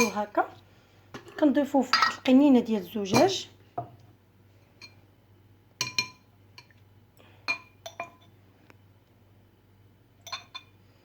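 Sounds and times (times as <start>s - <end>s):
glass bottle clinking: 1.9s - 2.2s, 10.2s - 10.7s.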